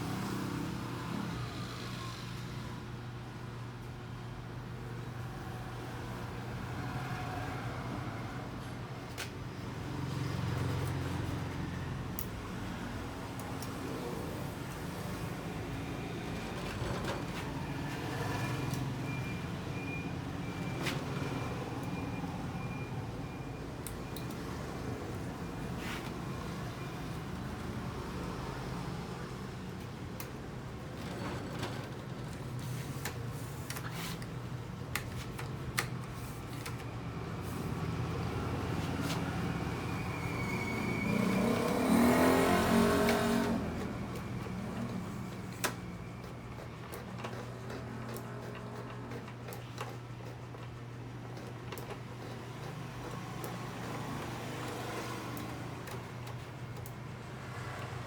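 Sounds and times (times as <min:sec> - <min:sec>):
motor vehicle passing: 0:38.1 - 0:45.4.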